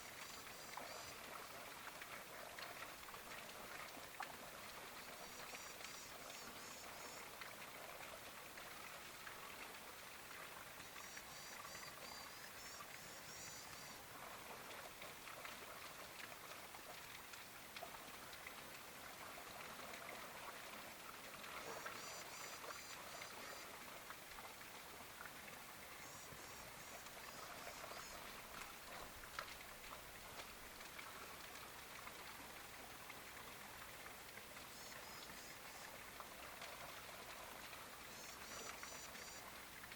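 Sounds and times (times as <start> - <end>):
steady hiss: 37.7 - 39.9.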